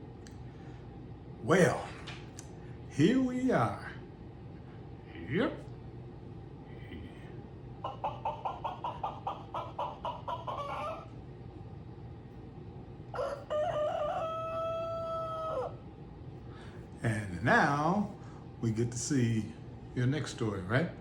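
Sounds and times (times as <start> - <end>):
rooster clucking: 7.7 - 11.2, 13.2 - 15.8
rooster crowing: 7.8 - 11.2, 13.1 - 15.9.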